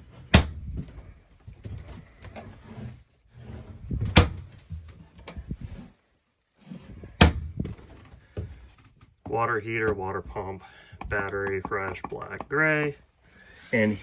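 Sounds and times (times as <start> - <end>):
rustling: 0.0 - 10.6
cabinet doors clacking shut: 4.0 - 4.5.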